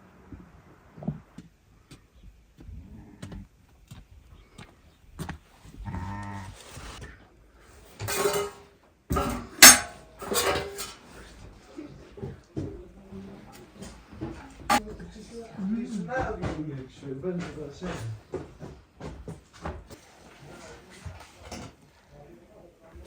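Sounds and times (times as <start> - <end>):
farm animal crying: 5.8 - 6.6.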